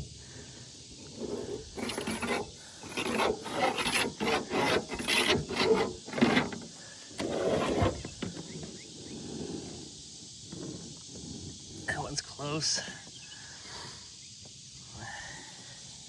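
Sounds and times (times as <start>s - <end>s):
metal pole scraping against bracket: 1.0s - 8.7s.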